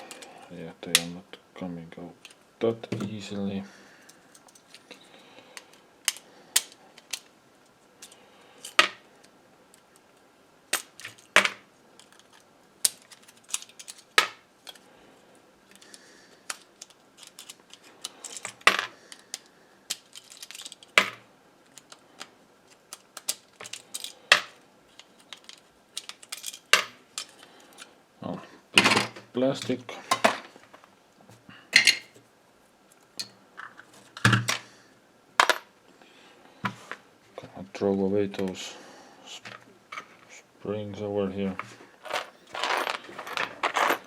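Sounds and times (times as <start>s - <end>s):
small metal and plastic parts clicking: 5.5s - 7.3s, 12.0s - 14.8s, 15.7s - 21.0s, 21.6s - 27.9s.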